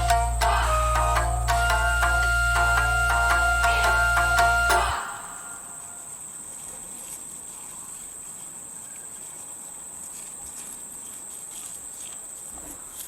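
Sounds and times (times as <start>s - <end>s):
faint ticks and rustles: 6.2s - 13.0s.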